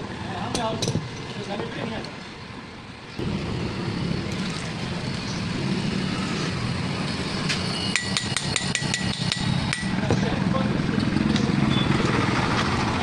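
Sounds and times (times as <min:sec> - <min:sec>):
steady machine drone: 0:02.6 - 0:13.0.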